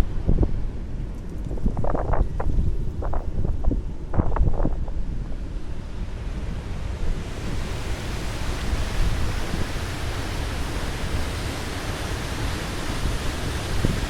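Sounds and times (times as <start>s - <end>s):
water rushing from a dam: 5.5s - 14.0s.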